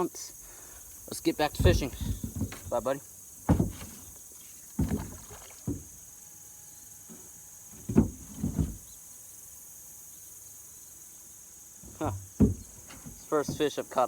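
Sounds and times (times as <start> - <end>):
high insect hiss: 0.0 - 14.0
splashes and knocks in water: 1.4 - 6.0.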